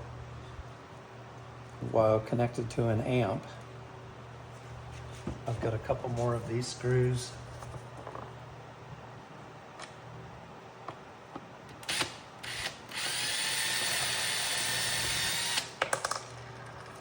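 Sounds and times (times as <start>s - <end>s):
power drill driving screw: 11.8s - 15.8s.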